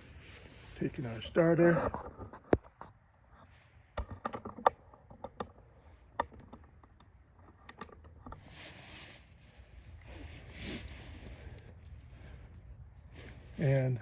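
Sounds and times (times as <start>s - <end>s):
soft hissy rustle: 0.0s - 1.7s, 8.4s - 14.0s.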